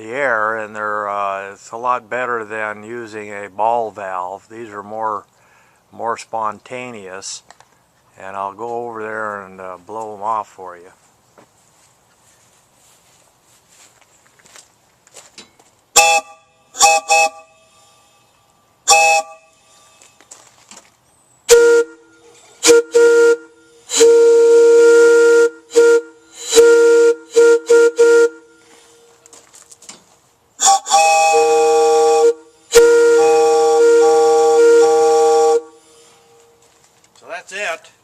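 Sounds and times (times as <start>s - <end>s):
air whistle blasts: 16.0s - 20.2s, 21.5s - 29.2s, 30.6s - 36.4s.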